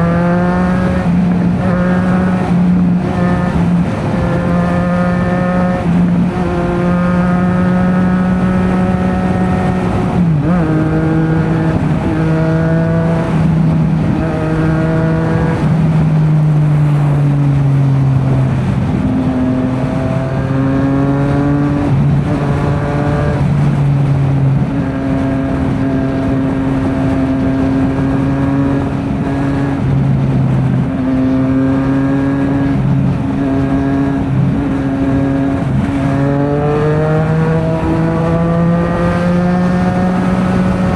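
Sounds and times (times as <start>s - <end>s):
motorcycle engine while riding: 0.0s - 40.9s.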